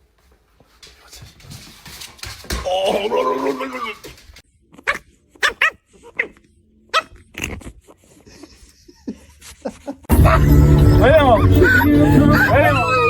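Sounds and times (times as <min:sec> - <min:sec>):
dog barking: 0:04.8 - 0:07.2.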